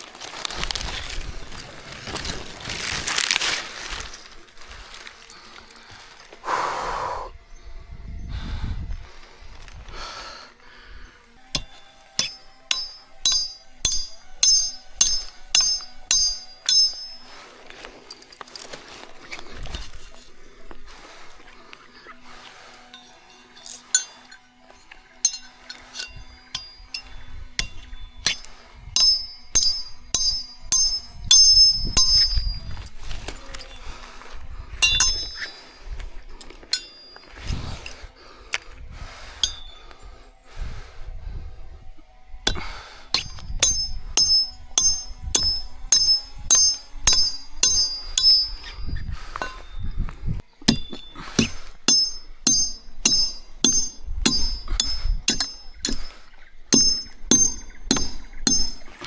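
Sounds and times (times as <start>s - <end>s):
sharp metallic ringing strikes: 11.4s - 38.0s, 39.4s - 40.2s, 41.4s - 59.0s.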